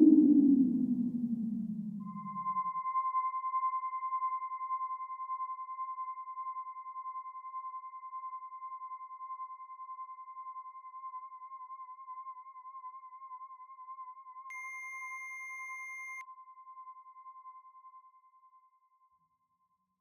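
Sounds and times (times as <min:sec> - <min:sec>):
electronic whistle-like tone: 0:00.0 - 0:06.8, 0:14.5 - 0:16.2.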